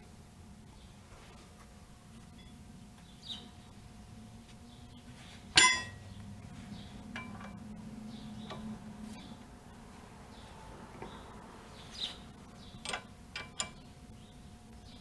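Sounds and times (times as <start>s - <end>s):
metal tools clinking: 5.5s - 6.0s.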